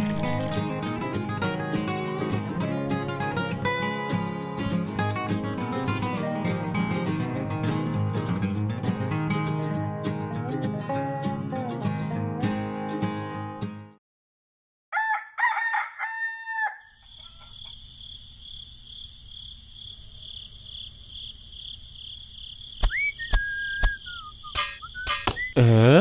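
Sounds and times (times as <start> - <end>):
rooster crowing: 14.9 - 17.7
short whistle-like call: 22.8 - 25.7.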